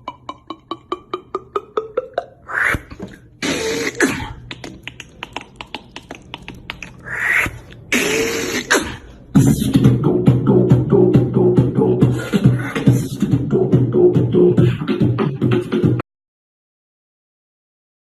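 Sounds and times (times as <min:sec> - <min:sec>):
beatboxing mouth clicks: 0:00.0 - 0:16.0
beatboxing hissing snare bursts: 0:02.5 - 0:16.0.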